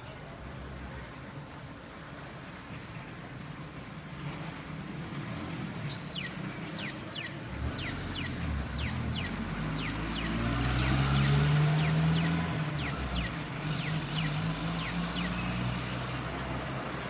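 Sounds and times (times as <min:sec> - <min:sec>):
road traffic rumble: 0:00.0 - 0:17.0
crossing signal chirping: 0:07.8 - 0:15.6.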